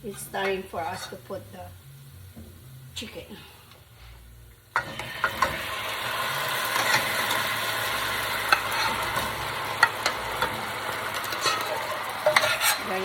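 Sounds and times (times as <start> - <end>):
meat sizzling in a pan: 4.7 - 13.0
utensil clicking against pan: 11.2 - 12.9.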